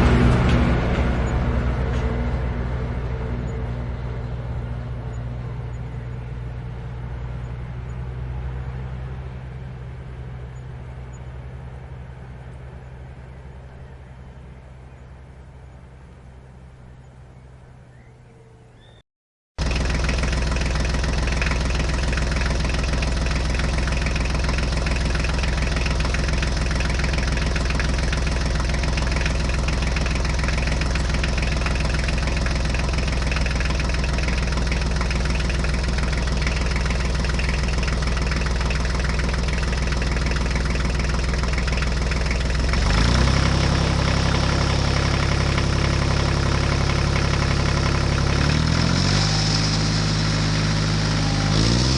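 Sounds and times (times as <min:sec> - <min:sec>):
tractor engine idling: 0:00.0 - 0:18.0, 0:19.6 - 0:51.9.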